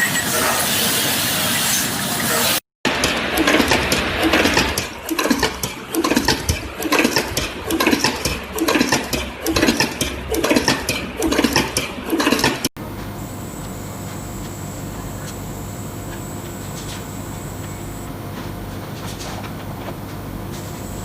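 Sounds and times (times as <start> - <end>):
factory machine clattering: 1.6 - 12.7.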